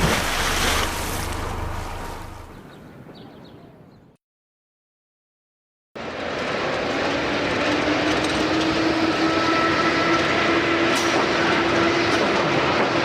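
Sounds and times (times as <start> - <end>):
machinery noise: 6.0 - 13.0.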